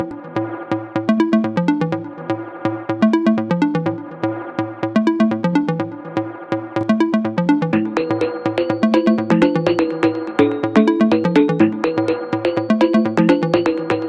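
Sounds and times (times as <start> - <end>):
electronic music with beat: 0.0 - 14.0.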